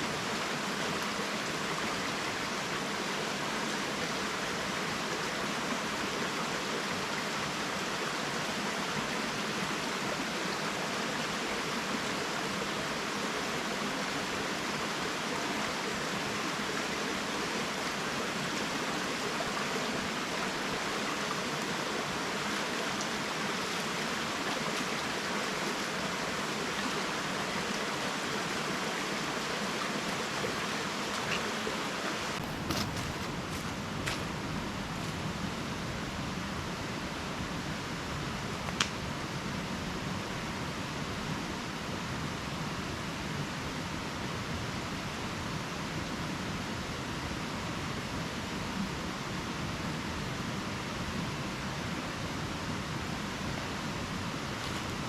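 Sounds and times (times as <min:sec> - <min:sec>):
water tumbling over rocks: 0:32.3 - 0:33.6.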